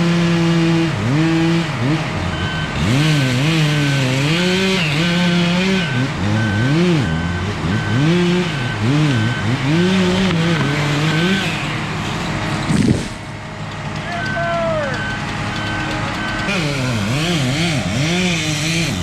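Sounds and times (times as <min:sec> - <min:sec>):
engine revving up and down: 0:00.0 - 0:19.0
reversing alarm beeping: 0:02.2 - 0:03.1, 0:04.6 - 0:12.2, 0:14.0 - 0:18.4.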